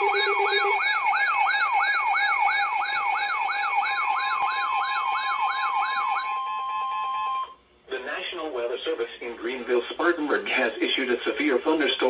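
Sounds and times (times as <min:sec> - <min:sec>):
lower pulsing tone: 0:00.0 - 0:00.8
steady single alert tone: 0:00.0 - 0:00.8
steady background tones: 0:00.0 - 0:01.2
sweeping electronic siren tone: 0:00.0 - 0:07.6.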